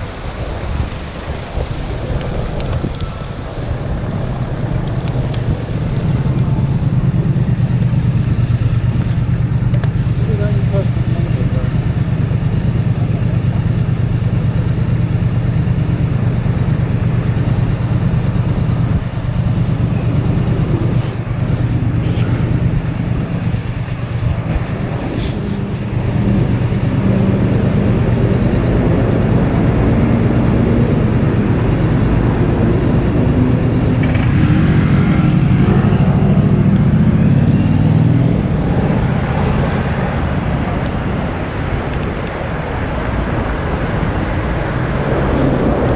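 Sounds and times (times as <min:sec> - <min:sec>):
vehicle engine and road noise: 0:00.0 - 0:45.9.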